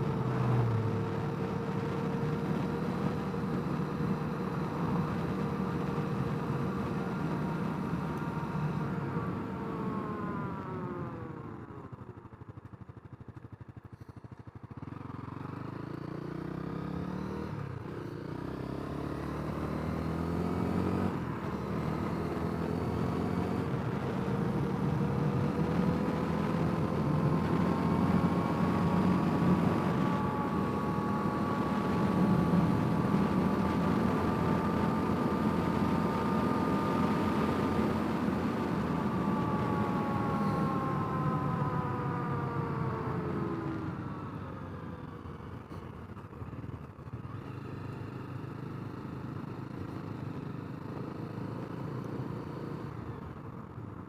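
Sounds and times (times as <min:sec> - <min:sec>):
motorcycle engine revving: 0:14.8 - 0:44.2.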